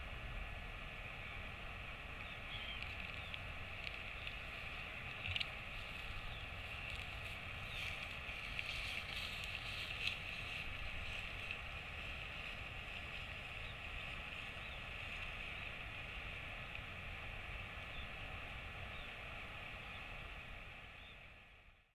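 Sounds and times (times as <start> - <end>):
wind rumbling on microphone: 0.0 - 21.6
faint clicks: 2.2 - 10.2.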